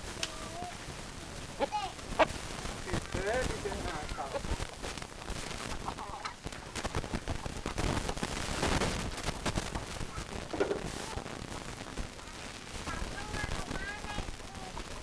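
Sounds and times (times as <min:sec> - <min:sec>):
chickens clucking: 0:00.2 - 0:07.3.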